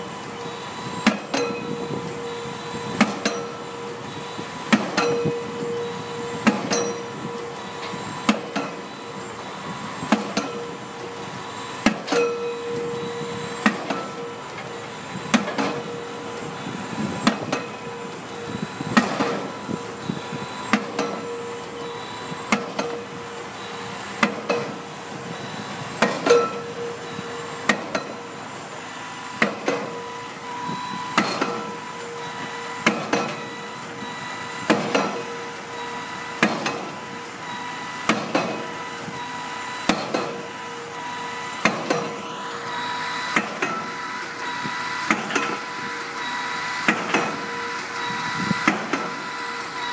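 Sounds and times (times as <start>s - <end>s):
machinery hum: 0.0s - 49.9s
pile-driving hammer blows: 2.9s - 3.6s, 4.6s - 5.7s, 6.3s - 9.0s, 10.0s - 10.7s, 11.8s - 24.8s, 25.4s - 28.2s, 29.4s - 30.1s, 31.1s - 31.8s, 32.8s - 33.5s, 34.6s - 35.4s, 36.4s - 37.1s, 38.0s - 38.9s, 39.8s - 40.6s, 41.6s - 49.9s.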